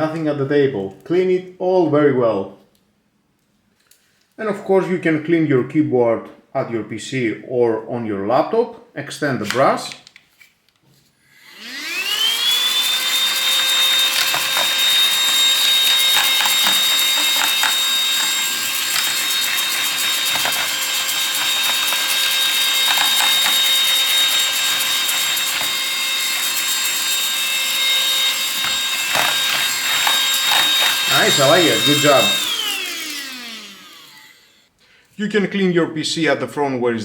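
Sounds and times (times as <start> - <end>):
handheld vacuum motor whining: 11.3 - 34.7.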